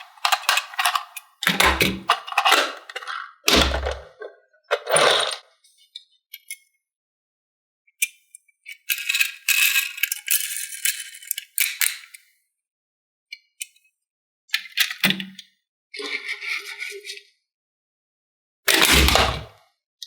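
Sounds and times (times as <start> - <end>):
toy pieces rattling and clicking: 0.0 - 5.4.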